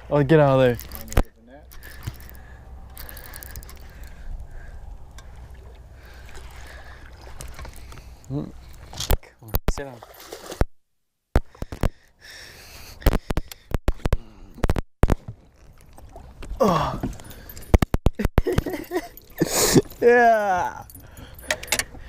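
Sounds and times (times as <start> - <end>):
microphone pops and crackles: 11.3 - 12.0, 13.0 - 15.6, 17.7 - 18.8
boat knocks and clicks: 20.9 - 22.0.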